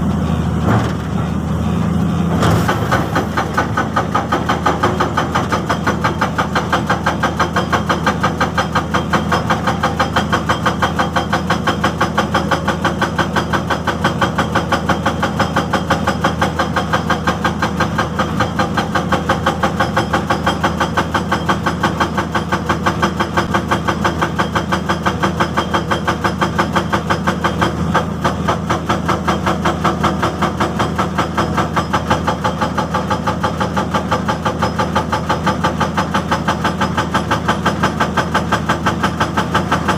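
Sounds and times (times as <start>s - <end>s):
diesel engine running: 0.0s - 7.3s
hydraulic breaker hammering: 2.3s - 39.9s.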